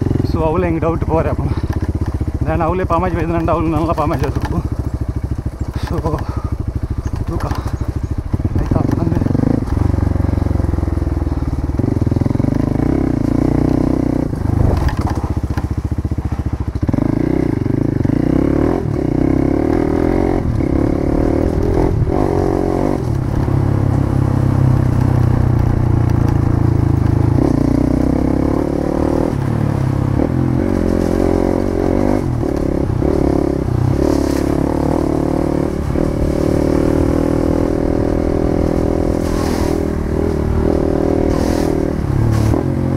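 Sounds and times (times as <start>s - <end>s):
engine running loudly: 0.0s - 42.9s
knocks and scrapes: 14.4s - 15.8s, 38.8s - 42.8s.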